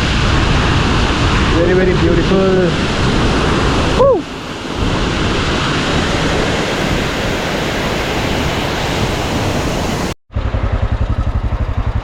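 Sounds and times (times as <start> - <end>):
rushing stream water: 0.1 - 10.2
motorcycle engine idling: 10.3 - 12.0.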